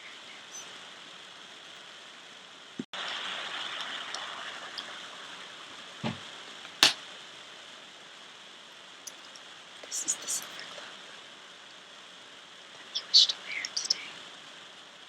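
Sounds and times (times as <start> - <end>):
fireplace crackling and hissing: 0.0 - 15.0
sharp loud pop: 6.8 - 7.0.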